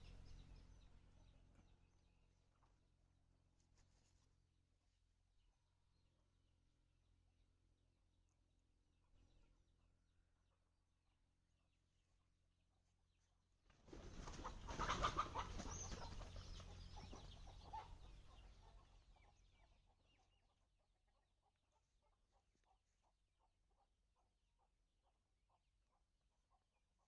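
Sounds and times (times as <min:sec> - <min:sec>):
chickens clucking and squawking: 0:13.9 - 0:22.8.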